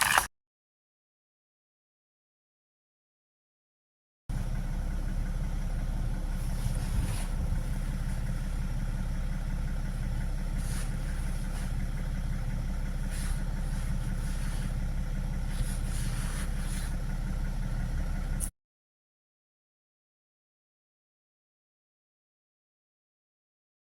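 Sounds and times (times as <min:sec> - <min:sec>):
car engine idling: 0:04.3 - 0:18.5.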